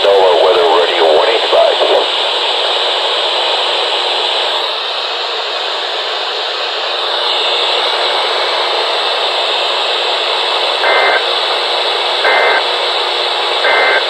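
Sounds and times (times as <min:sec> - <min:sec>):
radio static hiss: 0:00.0 - 0:02.8, 0:10.5 - 0:14.0.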